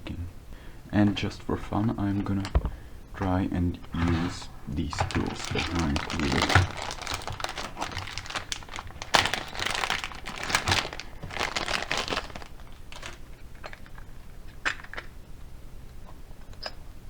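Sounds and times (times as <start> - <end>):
plastic packaging crinkling: 3.2 - 14.0.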